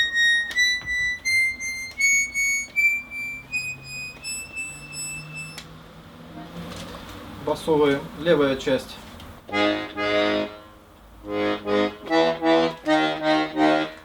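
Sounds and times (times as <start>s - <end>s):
high accordion reed notes: 0.0s - 5.6s, 9.5s - 14.0s
accordion key clicks: 12.1s - 13.0s.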